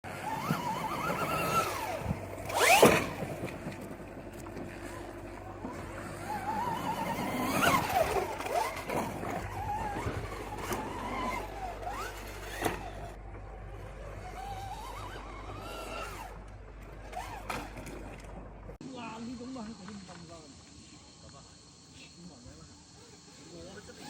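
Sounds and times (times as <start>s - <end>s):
off-road vehicle motor revving: 0.0s - 18.8s.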